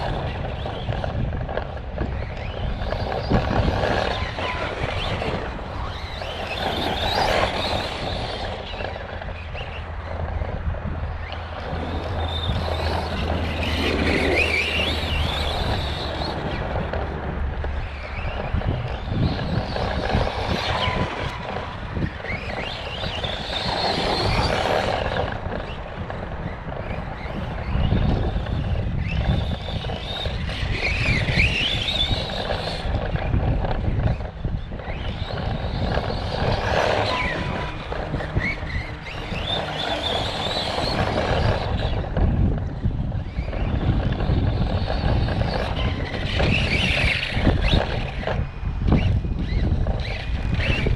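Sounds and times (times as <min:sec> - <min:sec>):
electric rc truck motor whining: 0:00.0 - 0:50.9.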